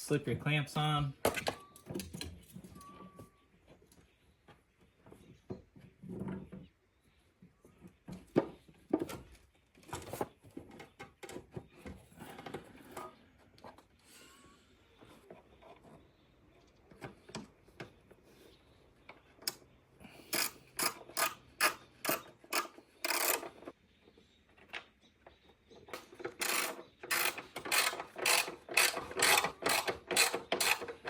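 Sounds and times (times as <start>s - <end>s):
hand tool clicking: 20.3s - 23.5s, 26.0s - 31.0s.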